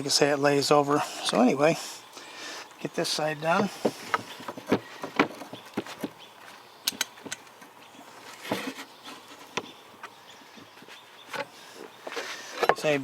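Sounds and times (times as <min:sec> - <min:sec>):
sharp metal clicks: 0:06.8 - 0:07.6.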